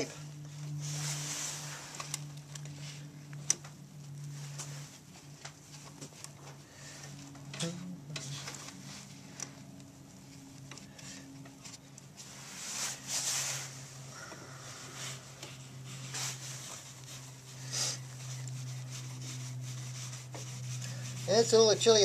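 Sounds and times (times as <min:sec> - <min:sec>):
steady low hum: 0:00.0 - 0:22.0
hands rustling and scraping: 0:08.2 - 0:22.0.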